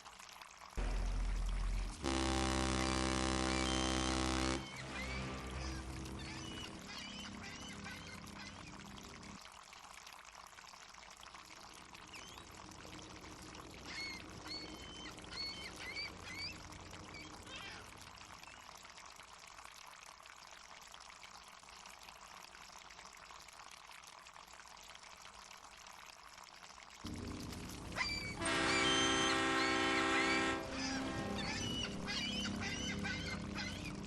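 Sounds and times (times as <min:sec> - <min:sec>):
water washing: 0:00.6 - 0:09.4, 0:27.0 - 0:34.0
seagull calls: 0:04.6 - 0:09.1, 0:13.8 - 0:17.9, 0:27.9 - 0:34.0.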